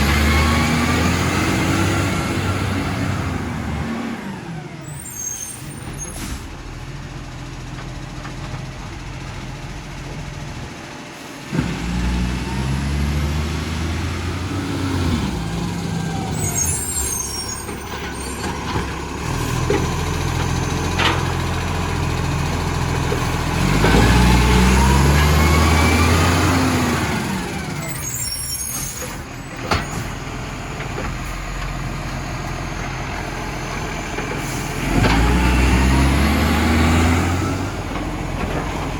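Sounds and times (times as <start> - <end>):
diesel truck engine revving: 0.0 - 38.9
air brakes hissing: 4.8 - 6.6, 16.3 - 18.5, 34.4 - 34.8.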